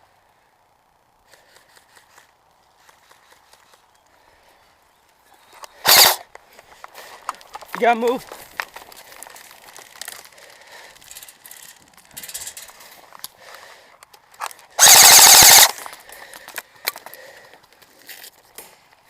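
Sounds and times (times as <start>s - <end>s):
airsoft gun full-auto burst: 5.8s - 6.2s, 14.8s - 15.8s.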